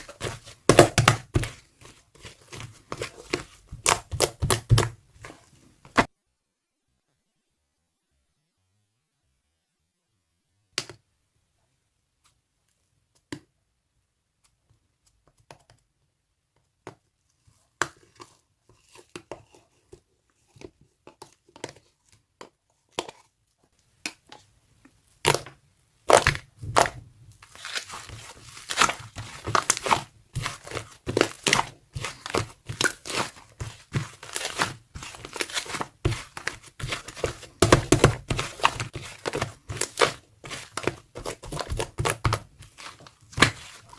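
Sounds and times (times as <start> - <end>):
slime squeezed and pulled by hand: 26.1 - 43.9.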